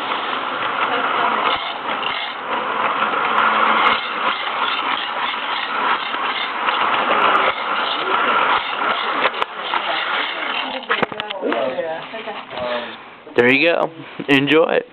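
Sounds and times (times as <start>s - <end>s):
toy train running on track: 0.0s - 11.3s.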